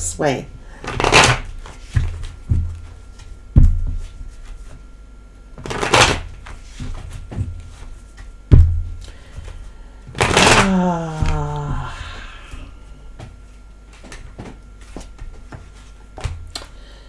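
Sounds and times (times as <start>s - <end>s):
cards thumping on table: 0.8s - 4.8s, 5.6s - 13.4s, 14.0s - 16.7s
person humming: 10.2s - 12.8s.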